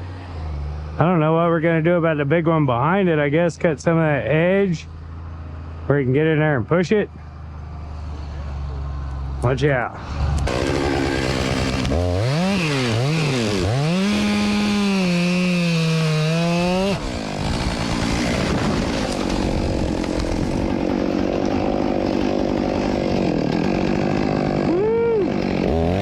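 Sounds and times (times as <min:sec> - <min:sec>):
chainsaw cutting wood: 0:10.0 - 0:26.0
chainsaw revving: 0:10.0 - 0:26.0.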